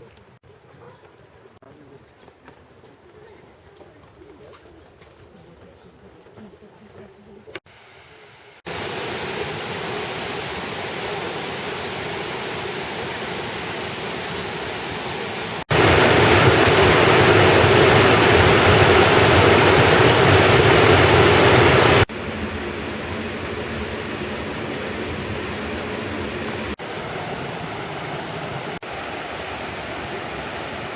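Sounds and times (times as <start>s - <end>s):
waterfall rushing: 8.7s - 30.9s.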